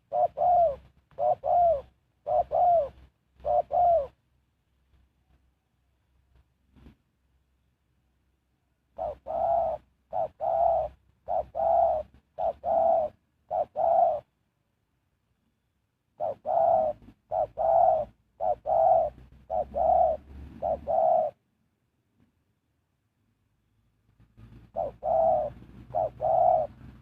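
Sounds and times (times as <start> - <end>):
dove cooing: 0.0 - 4.2, 8.9 - 14.4, 16.2 - 21.4, 24.4 - 27.0.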